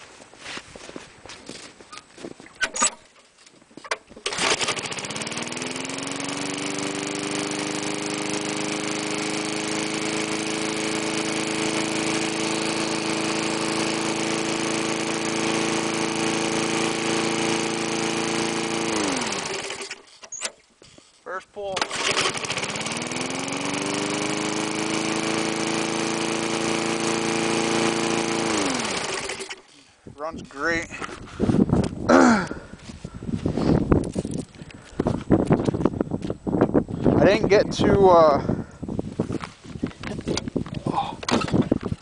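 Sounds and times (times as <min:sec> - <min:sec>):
lawn mower engine running: 0:04.0 - 0:20.5, 0:21.7 - 0:31.0.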